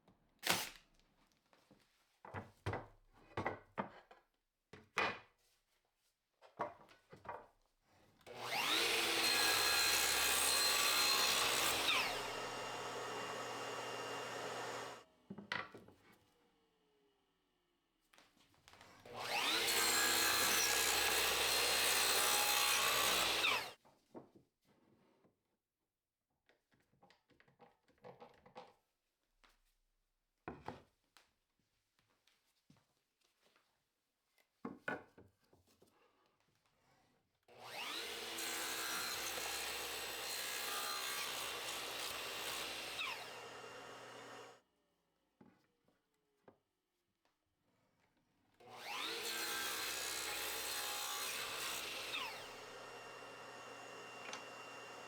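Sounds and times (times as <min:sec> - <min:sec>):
power tool whining: 0:08.3 - 0:15.0, 0:19.1 - 0:23.8, 0:37.6 - 0:44.6, 0:48.7 - 0:55.0.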